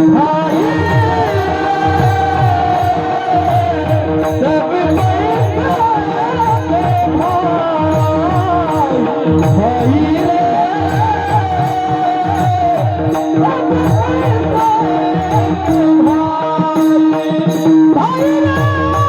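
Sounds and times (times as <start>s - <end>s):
drum strokes: 0.0s - 17.0s
hand cymbals striking: 0.0s - 19.0s
man singing devotional song: 0.0s - 19.0s
steady drone: 0.2s - 14.8s.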